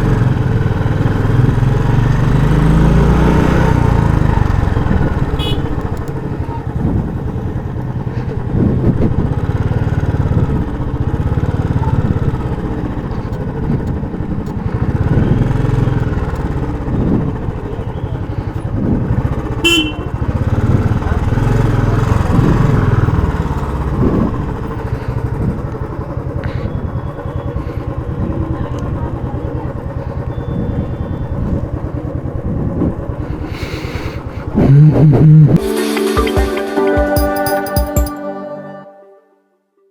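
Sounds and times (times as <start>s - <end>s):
motorcycle engine thumping: 15.9s - 34.6s.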